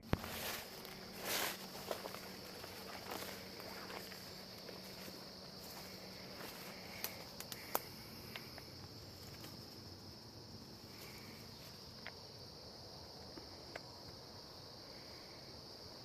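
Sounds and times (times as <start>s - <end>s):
high-pitched insect chorus: 0.0s - 16.0s
sharp ticks and snaps: 1.9s - 10.2s, 10.9s - 12.4s, 13.2s - 14.2s.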